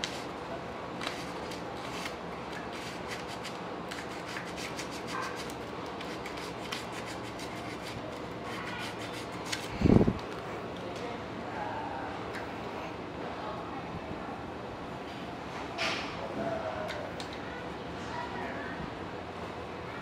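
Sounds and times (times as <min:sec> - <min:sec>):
sandpaper scraping brake pad: 0:02.7 - 0:09.7.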